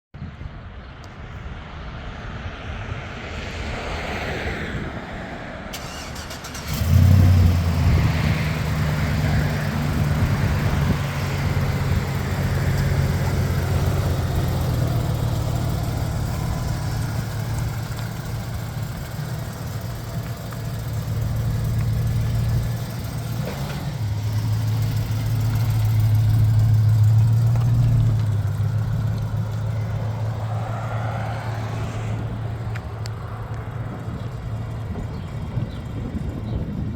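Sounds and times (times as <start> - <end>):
engine starting and idling: 5.7 - 28.8.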